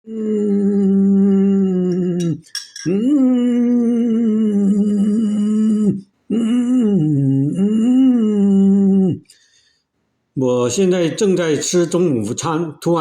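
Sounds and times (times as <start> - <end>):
man humming long tones: 0.0 - 9.3.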